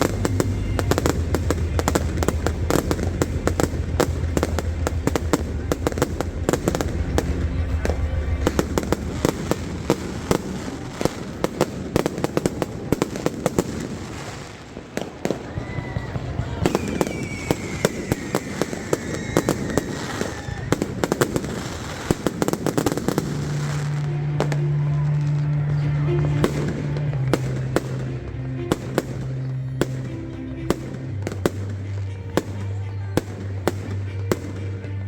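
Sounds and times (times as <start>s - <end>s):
firework whistling down: 0.0s - 24.5s
fireworks crackling bangs: 0.0s - 35.0s.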